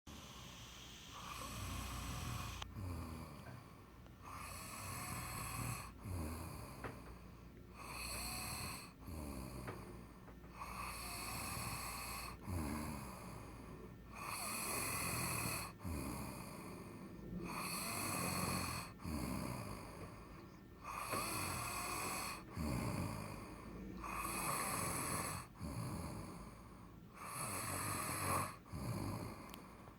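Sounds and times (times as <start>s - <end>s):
person snoring: 0.1s - 29.8s.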